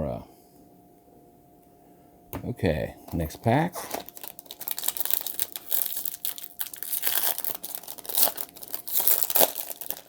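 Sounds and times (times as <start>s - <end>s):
card pack wrapper tearing and crinkling: 3.7s - 10.0s.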